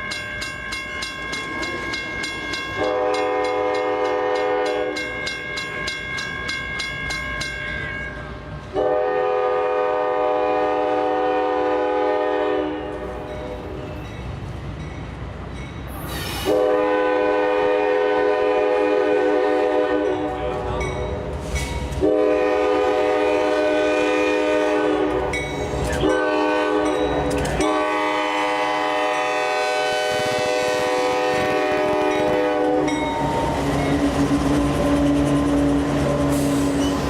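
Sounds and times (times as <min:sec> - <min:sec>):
locomotive air horn blasts: 0:02.8 - 0:05.2, 0:08.7 - 0:13.1, 0:16.4 - 0:20.4, 0:22.0 - 0:33.1
short air hiss: 0:16.0 - 0:16.6.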